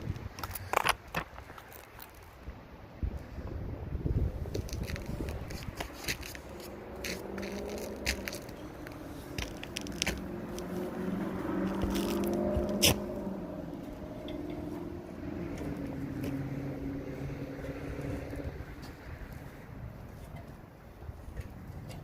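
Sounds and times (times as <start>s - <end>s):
engine-like hum: 0.0s - 22.0s
scraping and crunching on roofing: 0.1s - 2.4s, 4.5s - 13.2s.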